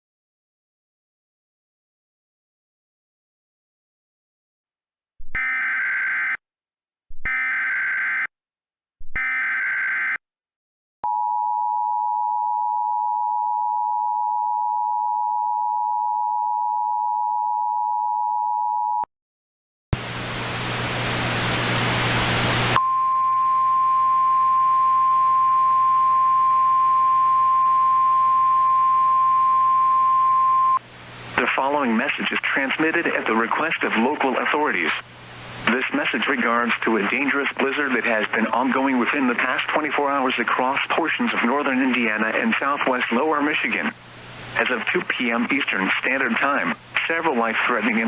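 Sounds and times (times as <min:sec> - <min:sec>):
steady single-pitch alert tone: 0:11.0 - 0:19.0, 0:22.8 - 0:30.8
two-tone attention signal: 0:22.8 - 0:30.8
radio hiss: 0:31.3 - 0:41.0, 0:41.6 - 0:48.0.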